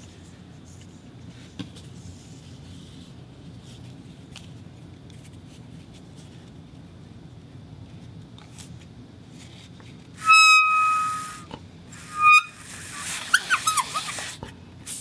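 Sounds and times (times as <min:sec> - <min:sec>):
rubber whistle high note: 0:10.2 - 0:14.0.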